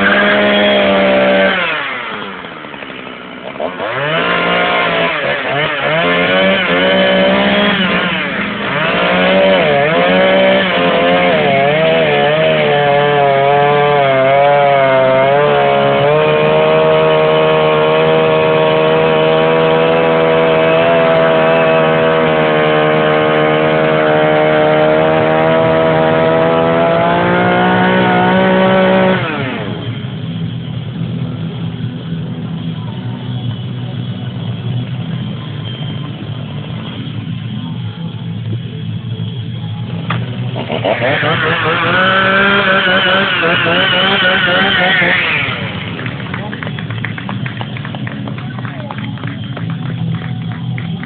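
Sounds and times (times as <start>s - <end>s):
chainsaw cutting wood: 0.0s - 30.0s, 40.1s - 48.1s.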